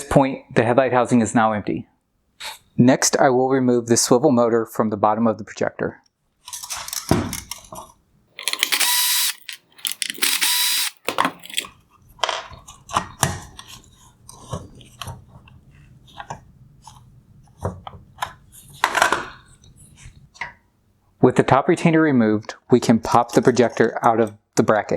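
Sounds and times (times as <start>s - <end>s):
plastic parts clicking and knocking: 6.5s - 7.8s, 8.4s - 11.7s
power screwdriver whining: 8.4s - 11.7s.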